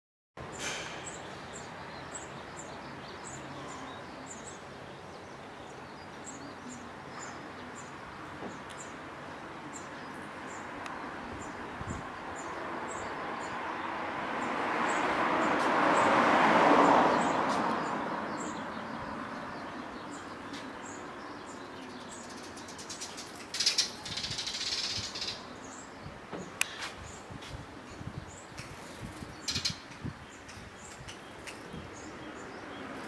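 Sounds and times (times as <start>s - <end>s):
birds chirping: 0.5s - 33.0s
vehicle passing: 10.6s - 20.7s.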